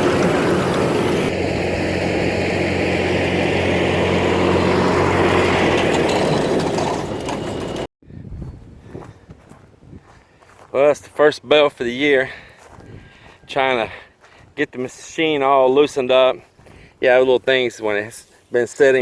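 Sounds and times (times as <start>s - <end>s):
tractor engine running baler: 0.0s - 7.9s.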